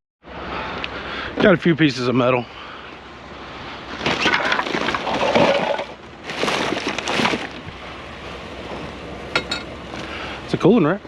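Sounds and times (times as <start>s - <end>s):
crunching crackling rummaging: 3.8s - 7.8s.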